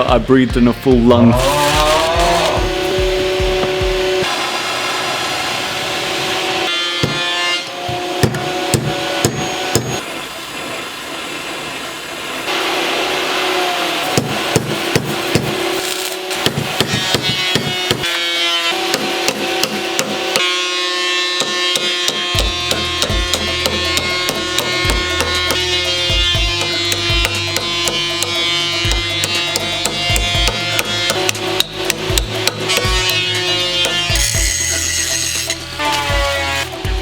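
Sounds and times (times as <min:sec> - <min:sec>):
music with held tones: 0:00.0 - 0:04.3, 0:22.1 - 0:37.0
sharp percussive hits: 0:01.0 - 0:04.3, 0:21.4 - 0:37.0.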